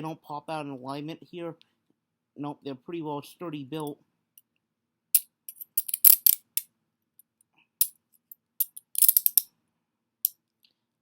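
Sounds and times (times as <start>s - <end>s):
handcuffs clicking and clinking: 5.2s - 6.7s, 7.8s - 9.5s.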